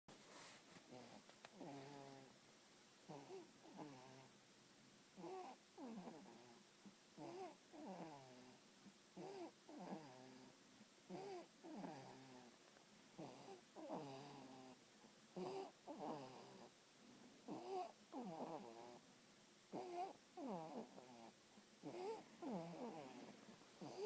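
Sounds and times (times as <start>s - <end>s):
faint snoring: 0.9s - 2.4s, 3.0s - 4.4s, 5.2s - 6.6s, 7.2s - 8.6s, 9.2s - 12.6s, 13.2s - 16.8s, 17.4s - 19.0s, 19.7s - 24.0s.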